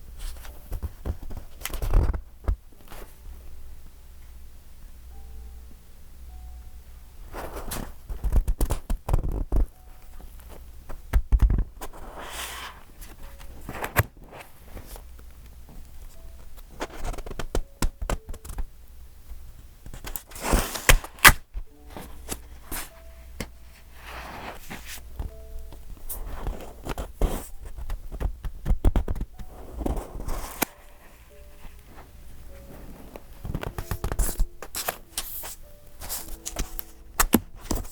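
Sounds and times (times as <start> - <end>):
paper pages turning: 0.2 - 3.2, 7.4 - 15.2, 16.6 - 18.6, 19.8 - 25.4, 26.0 - 37.9.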